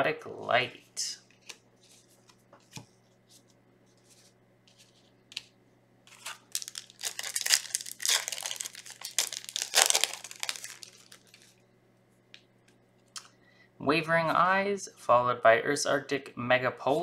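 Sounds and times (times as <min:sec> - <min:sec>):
foil wrapper crinkling: 0:06.1 - 0:11.6.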